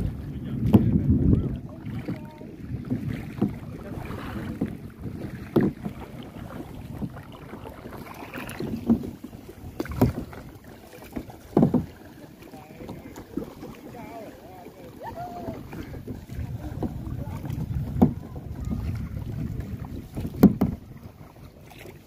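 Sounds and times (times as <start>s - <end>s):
wind rumbling on microphone: 0.0s - 11.9s, 12.6s - 22.0s
paddle strokes in water: 0.0s - 22.0s
sharp splashes or knocks: 1.9s - 12.1s.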